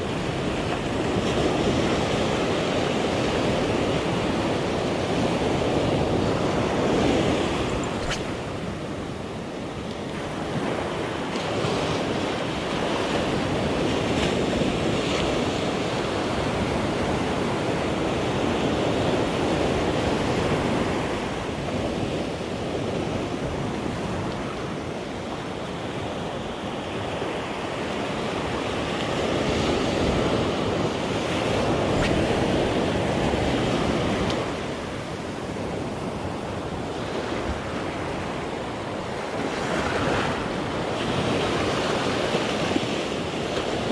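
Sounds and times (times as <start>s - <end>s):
wind on microphone: 0.0s - 24.8s, 28.7s - 43.9s
sea waves washing onto shore: 28.3s - 43.9s.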